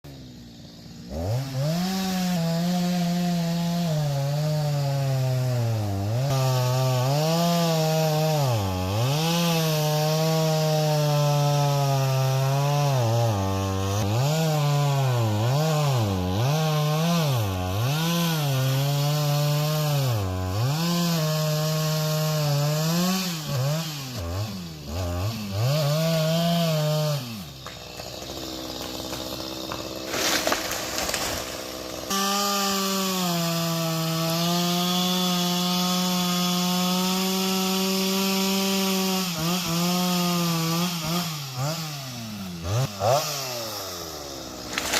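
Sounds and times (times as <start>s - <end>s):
chainsaw cutting wood: 0.0s - 44.9s.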